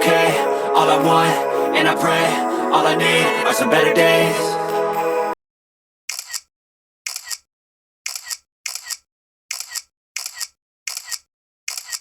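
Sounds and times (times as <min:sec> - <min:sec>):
camera shutter double clicks: 0:08.1 - 0:12.0.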